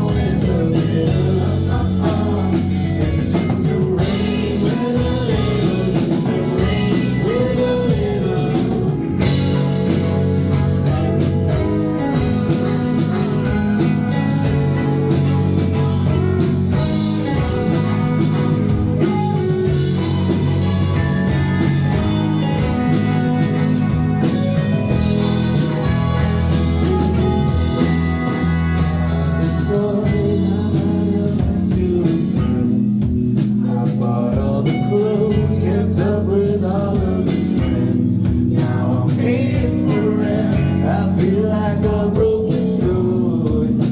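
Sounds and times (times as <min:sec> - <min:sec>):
person singing: 0:00.0 - 0:11.9, 0:28.2 - 0:43.9
band playing live: 0:00.0 - 0:43.9.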